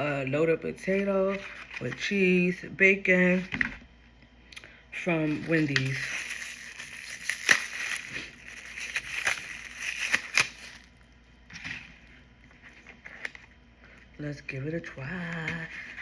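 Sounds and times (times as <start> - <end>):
food packaging crinkling: 5.2 - 14.1.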